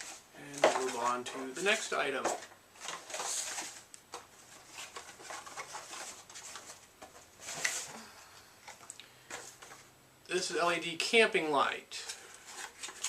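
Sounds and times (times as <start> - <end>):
packaging rustling: 0.0 - 9.9, 12.1 - 13.0.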